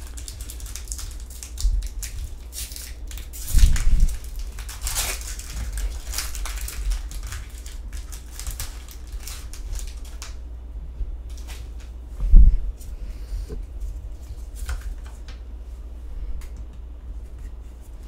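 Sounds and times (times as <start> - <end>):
foil wrapper crinkling and tearing: 0.0 - 10.4.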